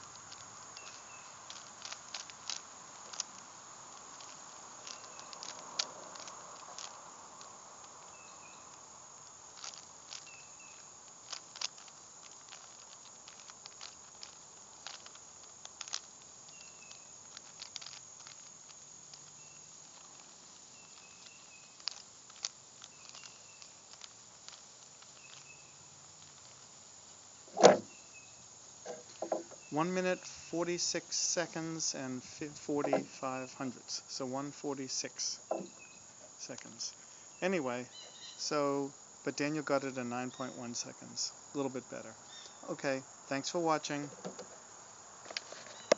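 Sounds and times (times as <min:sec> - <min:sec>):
puzzle cube layers clicking: 0:32.7 - 0:33.7.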